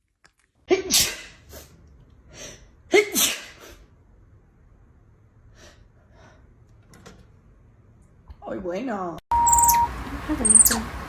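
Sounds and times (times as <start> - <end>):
person sneezing: 3.0 - 3.8.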